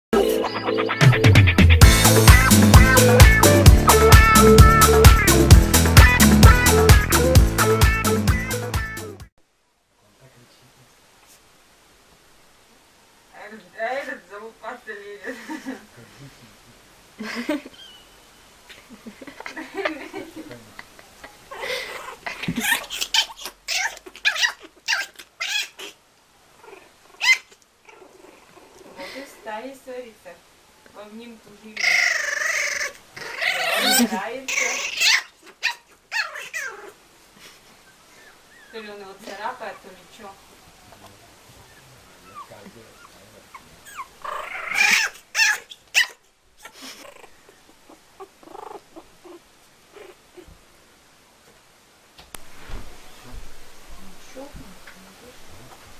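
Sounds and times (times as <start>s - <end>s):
kitten yowling: 40.8s - 46.2s
animals scuffling: 52.2s - 55.9s.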